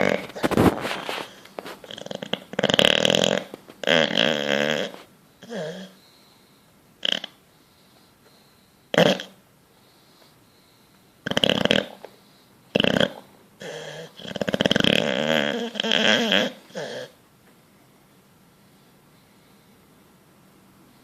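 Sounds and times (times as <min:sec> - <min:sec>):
dog snorts: 0:00.0 - 0:06.0, 0:07.0 - 0:07.4, 0:08.9 - 0:09.4, 0:11.2 - 0:12.1, 0:12.7 - 0:17.2
dog snoring: 0:00.0 - 0:06.1, 0:07.0 - 0:07.4, 0:08.9 - 0:09.4, 0:11.2 - 0:12.1, 0:12.7 - 0:17.2.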